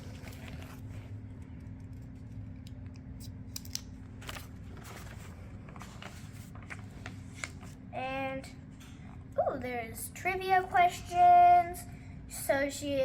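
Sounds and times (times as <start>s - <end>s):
booklet pages turning: 0.0s - 7.8s.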